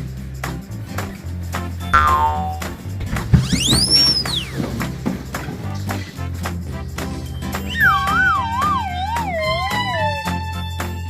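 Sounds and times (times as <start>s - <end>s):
background music with bass line: 0.0s - 11.0s
cartoon falling pitch effect: 2.0s - 2.7s, 7.7s - 10.3s.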